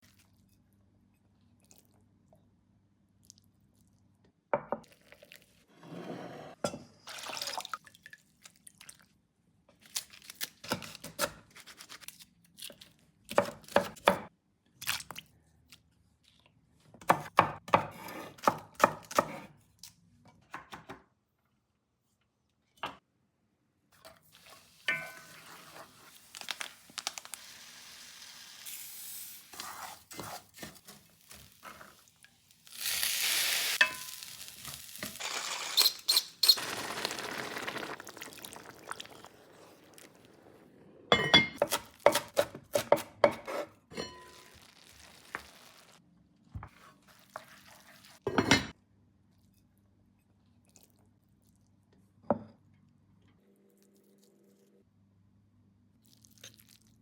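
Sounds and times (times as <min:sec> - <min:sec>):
food sizzling in a pan: 0:24.3 - 0:40.6, 0:44.0 - 0:46.0, 0:46.8 - 0:48.4
kitchen knocks and clatters: 0:41.1 - 0:44.6, 0:48.3 - 0:48.8.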